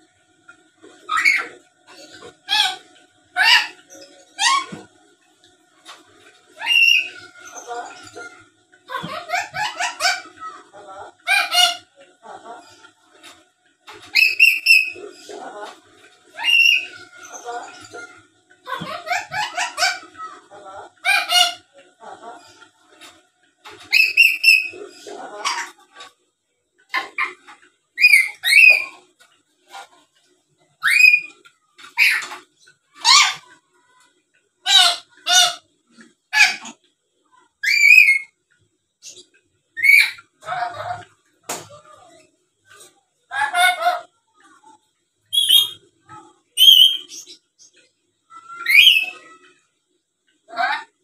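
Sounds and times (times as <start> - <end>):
parrot shrill chattering calls: 1.0 - 4.9, 6.6 - 8.3, 8.9 - 10.6, 11.2 - 11.9, 14.1 - 15.4, 16.3 - 20.3, 21.0 - 21.7, 23.8 - 25.8, 26.9 - 29.0, 30.8 - 32.4, 33.0 - 33.5, 34.6 - 35.7, 36.3 - 36.8, 37.6 - 38.3, 39.8 - 41.0, 45.3 - 45.8, 46.6 - 47.2, 48.3 - 49.4.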